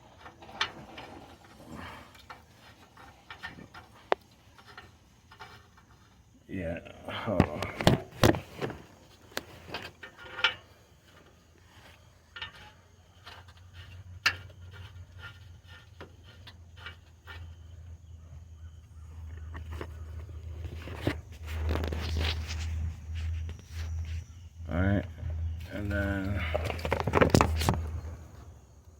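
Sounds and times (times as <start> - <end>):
handling clicks and scrapes: 0.0 - 6.3, 7.3 - 24.6, 25.2 - 28.7
low hum: 17.5 - 28.9.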